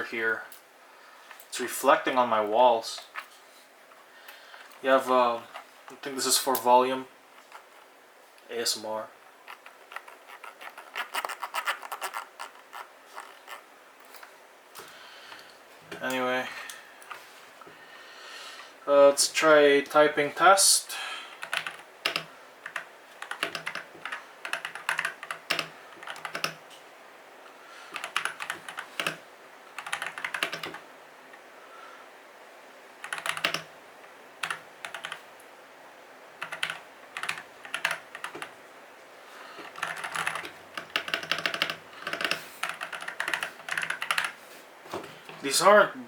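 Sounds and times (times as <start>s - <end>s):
mechanical keyboard typing: 9.5s - 13.6s, 21.4s - 26.6s, 28.0s - 29.2s, 29.8s - 30.8s, 33.0s - 33.7s, 34.4s - 35.2s, 36.4s - 38.5s, 39.6s - 44.4s.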